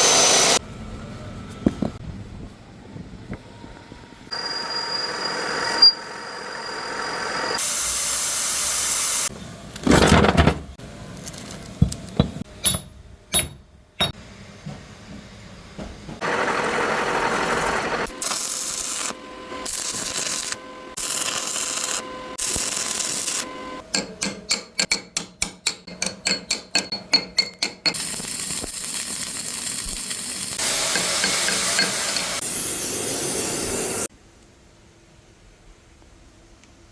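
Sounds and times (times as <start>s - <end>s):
welding crackling hiss: 4.4s - 9.3s, 18.1s - 23.5s, 28.0s - 34.1s
sharp metal taps: 12.6s - 14.2s.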